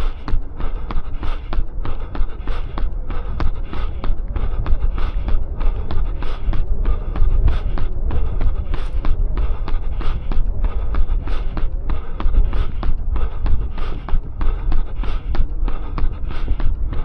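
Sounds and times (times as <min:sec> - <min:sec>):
low rumble: 0:00.0 - 0:17.0
running footsteps: 0:00.0 - 0:17.0.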